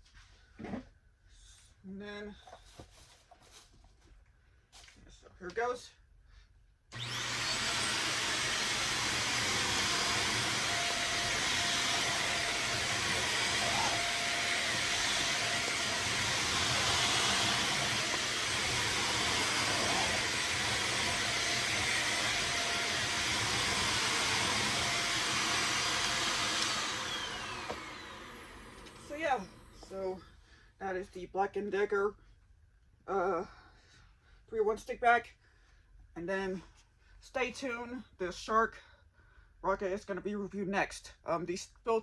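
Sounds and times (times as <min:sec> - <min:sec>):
stick vacuum motor whining: 0:06.9 - 0:30.1.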